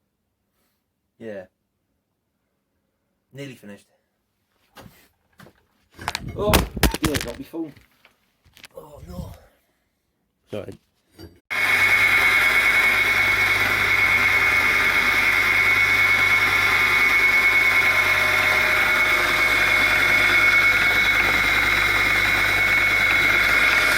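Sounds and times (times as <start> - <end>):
belt grinder motor whining: 11.5 - 23.9.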